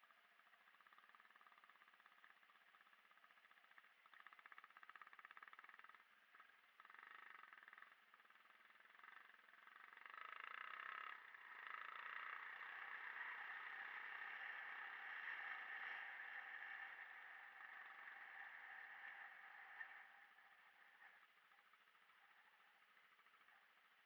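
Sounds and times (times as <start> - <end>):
motorcycle engine running: 0.0 - 24.0.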